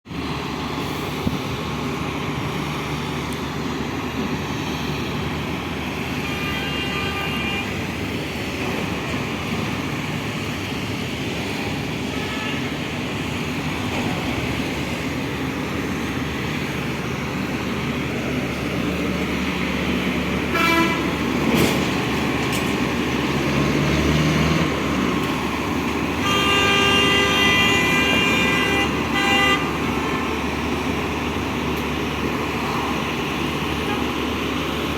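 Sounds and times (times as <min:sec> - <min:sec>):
heavy vehicles running: 0:00.0 - 0:34.9
horn sounding: 0:06.1 - 0:07.9, 0:12.0 - 0:12.8, 0:20.5 - 0:21.3, 0:26.2 - 0:29.9.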